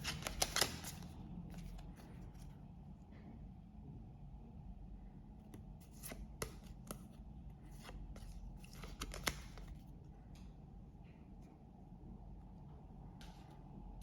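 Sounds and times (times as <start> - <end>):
cards clicking as flicked: 0.0 - 1.0, 8.7 - 9.7.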